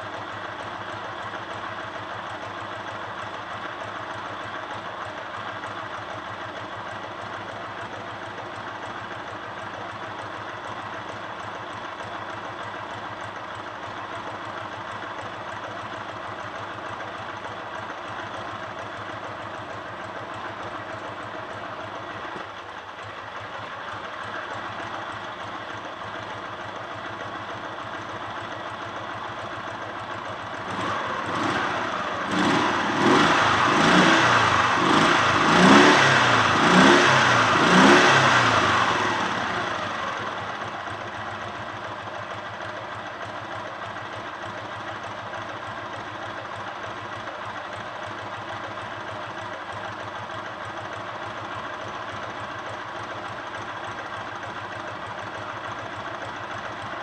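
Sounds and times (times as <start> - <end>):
engine knock: 0.0 - 57.0
motorcycle engine idling: 0.0 - 57.0
motorcycle engine revving: 30.2 - 49.1.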